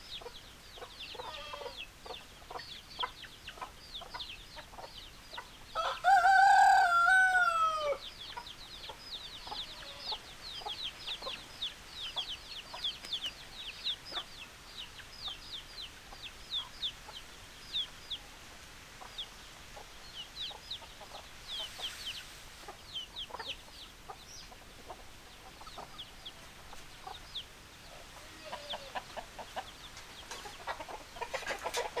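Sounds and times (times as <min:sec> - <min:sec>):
chicks peeping: 0:00.1 - 0:32.0
rooster crowing: 0:05.8 - 0:08.1.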